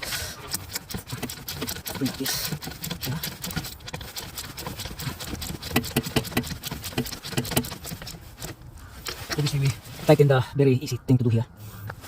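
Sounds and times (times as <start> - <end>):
hand tools clicking on metal: 0.0 - 8.6.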